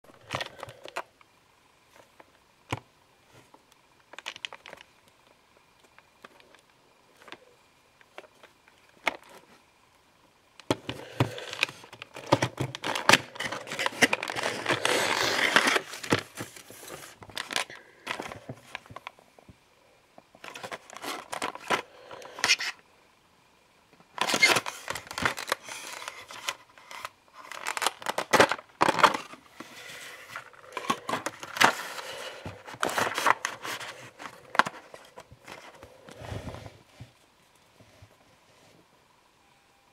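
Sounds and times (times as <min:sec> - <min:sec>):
cardboard and plastic crinkling: 0:01.9 - 0:09.6, 0:10.6 - 0:19.2, 0:20.3 - 0:22.8, 0:24.1 - 0:37.2.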